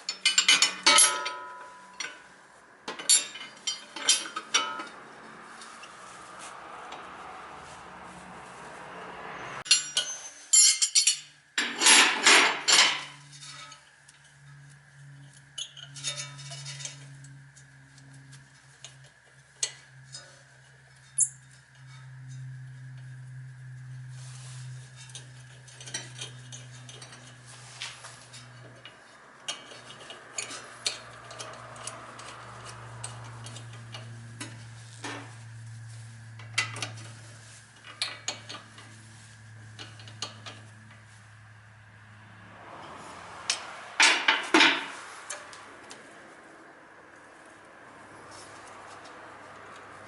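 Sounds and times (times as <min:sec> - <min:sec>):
metal tools clinking: 0:00.0 - 0:02.3, 0:02.9 - 0:05.0, 0:09.7 - 0:14.4, 0:21.0 - 0:22.5, 0:24.9 - 0:35.3.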